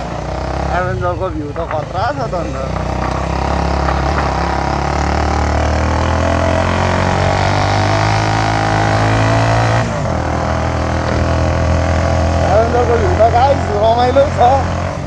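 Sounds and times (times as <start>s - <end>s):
motorcycle engine running: 0.0s - 9.1s.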